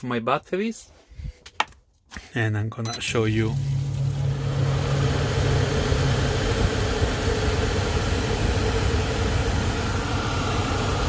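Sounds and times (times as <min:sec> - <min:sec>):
air conditioner fan humming: 0:03.0 - 0:11.0.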